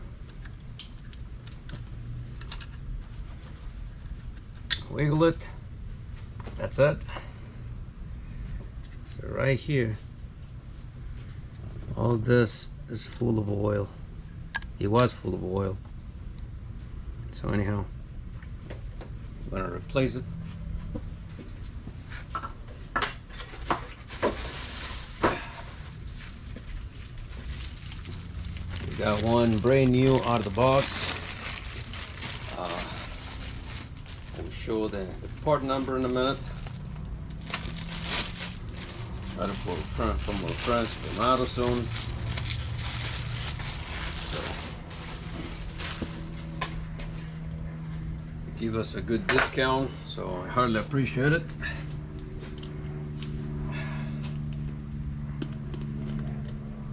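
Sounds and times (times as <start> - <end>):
steady low hum: 0.0 - 56.9
metal parts knocking and clinking: 23.0 - 23.9.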